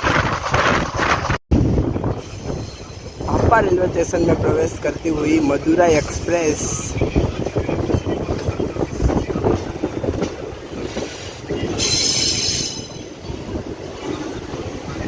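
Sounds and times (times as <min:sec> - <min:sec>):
train wheels rumbling and knocking: 0:00.0 - 0:15.0
high brake squeal: 0:11.8 - 0:13.1.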